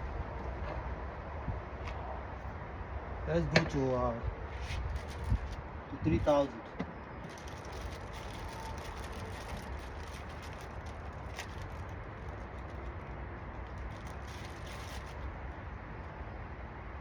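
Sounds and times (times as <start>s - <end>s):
sanding plastic lens: 13.6s - 15.3s.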